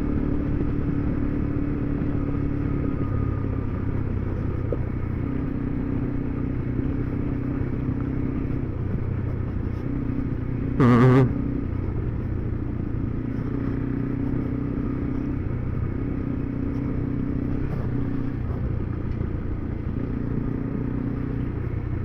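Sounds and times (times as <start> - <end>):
motorcycle engine running: 0.0 - 22.0
higher engine tone: 10.7 - 12.2.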